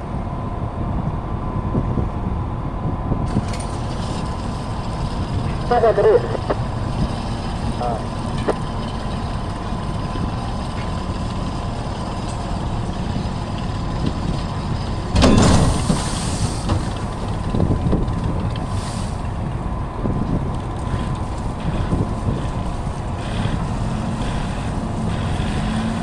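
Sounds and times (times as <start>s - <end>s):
thin steady whine: 0.0s - 12.8s
low machinery rumble: 0.0s - 26.0s.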